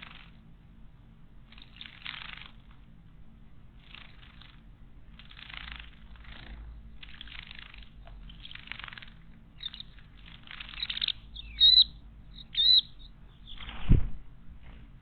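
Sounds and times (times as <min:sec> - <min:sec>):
bird calling sharply: 0:09.6 - 0:09.9, 0:10.6 - 0:13.6.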